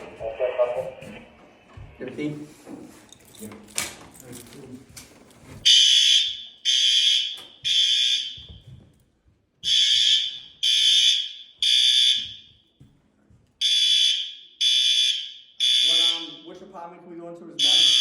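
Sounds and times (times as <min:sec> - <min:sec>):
fire alarm blasts: 0:05.6 - 0:08.9, 0:09.6 - 0:12.8, 0:13.6 - 0:16.5, 0:17.6 - 0:18.0.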